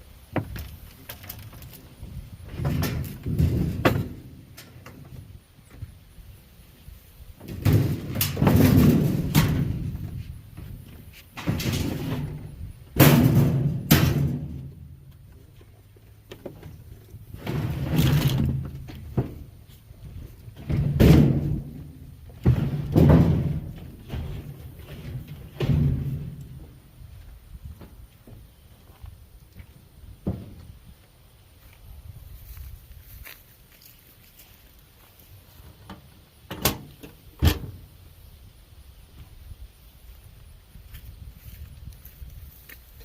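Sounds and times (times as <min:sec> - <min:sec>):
heavy bangs on metal: 0:13.0 - 0:14.9, 0:20.6 - 0:24.2.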